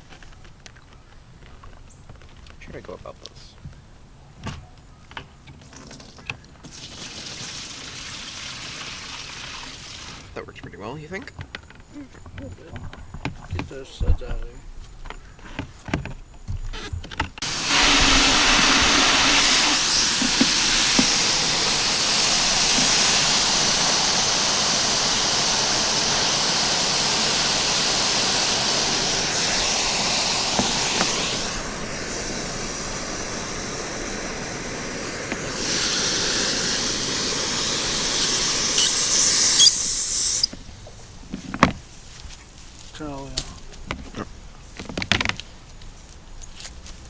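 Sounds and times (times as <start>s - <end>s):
water spraying from hose: 6.6s - 10.3s, 17.4s - 41.1s.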